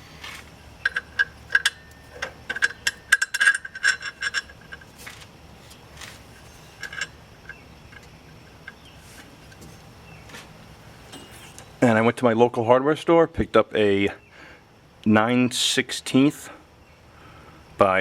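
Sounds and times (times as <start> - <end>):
metal rod clinking in steel bore: 0.8 - 4.9.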